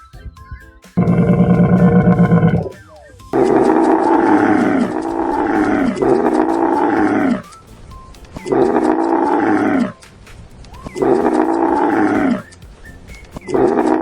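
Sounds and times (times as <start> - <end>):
cow mooing: 3.4 - 7.4.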